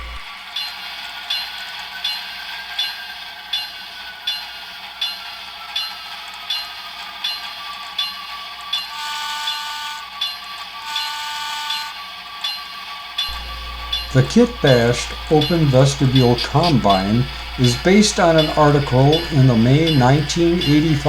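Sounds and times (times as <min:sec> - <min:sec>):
model steam locomotive chuffing: 0:00.0 - 0:21.0
locomotive whistle blasts: 0:08.9 - 0:10.1, 0:10.8 - 0:12.0, 0:13.3 - 0:21.0.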